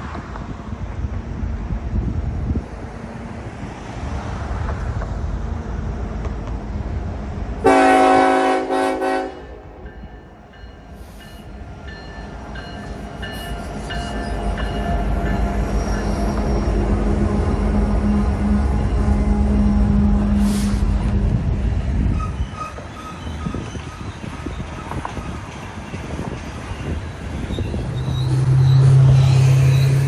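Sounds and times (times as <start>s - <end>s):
wind rumble: 0.0s - 7.7s, 9.4s - 30.0s
locomotive engine rumble: 4.6s - 30.0s
locomotive air horn blast: 7.6s - 9.7s, 17.8s - 21.0s.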